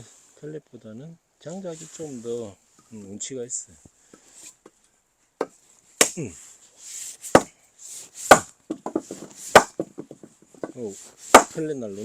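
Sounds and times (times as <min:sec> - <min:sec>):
axe chopping firewood: 0:07.3 - 0:07.5, 0:08.2 - 0:10.0, 0:11.3 - 0:11.6
split wood clattering: 0:08.3 - 0:11.6.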